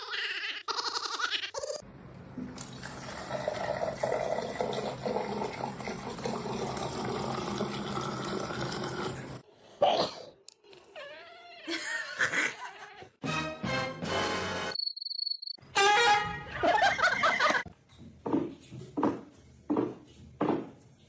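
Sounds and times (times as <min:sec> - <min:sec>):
water running from a tap: 0:02.6 - 0:09.4.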